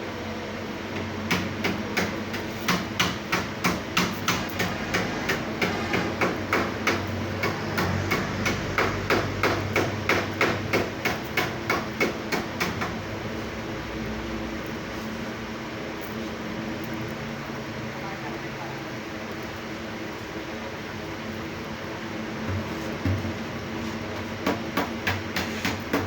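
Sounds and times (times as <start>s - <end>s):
rapid sharp knocks: 1.3s - 13.0s, 24.4s - 26.0s.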